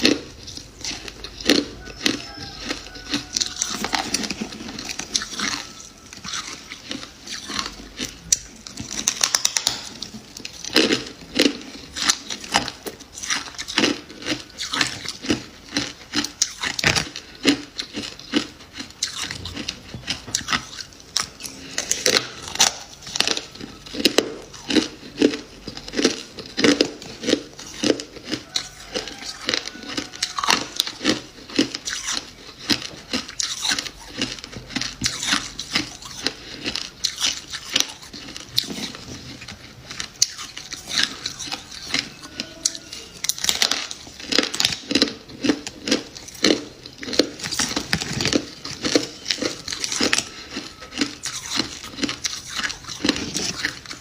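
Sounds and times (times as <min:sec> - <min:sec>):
crisp crunches of chewing frost: 0:00.0 - 0:54.0.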